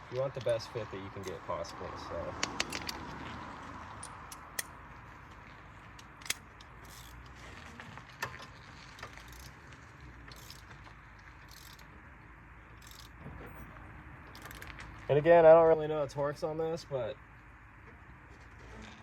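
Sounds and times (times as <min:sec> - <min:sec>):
wrench ratcheting: 0:06.1 - 0:07.2, 0:09.2 - 0:09.6, 0:10.3 - 0:10.7, 0:11.4 - 0:11.9, 0:12.8 - 0:13.1, 0:14.3 - 0:14.7.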